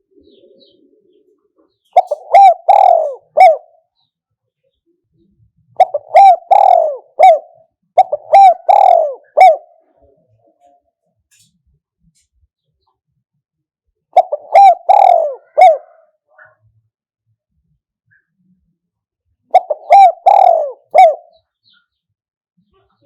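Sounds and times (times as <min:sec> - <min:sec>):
dove cooing: 0:00.0 - 0:04.1, 0:05.7 - 0:10.8, 0:14.1 - 0:16.6, 0:19.5 - 0:21.5.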